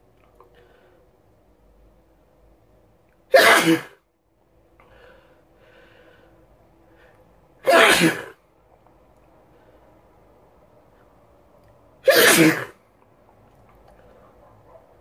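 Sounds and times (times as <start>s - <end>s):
person sneezing: 3.3s - 4.0s, 7.6s - 8.4s, 12.0s - 12.8s.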